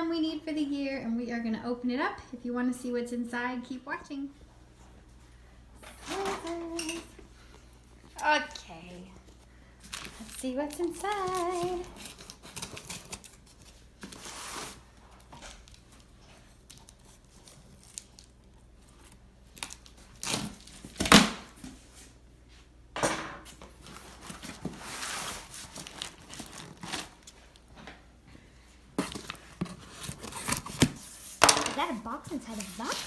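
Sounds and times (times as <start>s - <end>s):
cardboard and paper crinkling: 8.0s - 21.0s, 23.7s - 28.0s, 28.9s - 33.0s
packing tape tearing: 9.9s - 14.8s, 19.0s - 21.5s, 24.1s - 27.6s.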